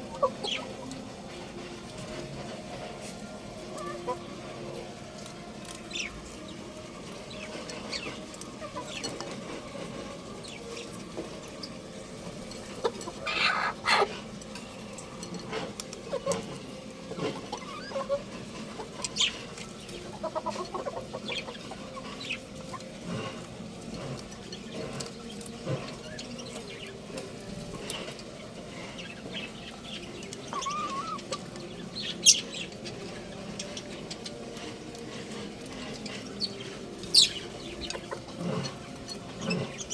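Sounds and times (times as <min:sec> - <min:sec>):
young rooster clucking and chirping: 0:12.6 - 0:14.2, 0:17.2 - 0:23.1, 0:27.7 - 0:34.4, 0:35.9 - 0:39.9.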